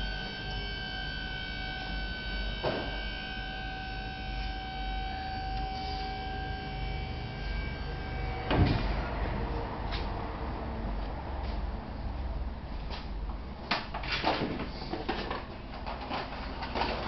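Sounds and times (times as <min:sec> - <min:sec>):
steady high whine: 0:00.0 - 0:13.6
loud clunk: 0:08.5 - 0:09.0.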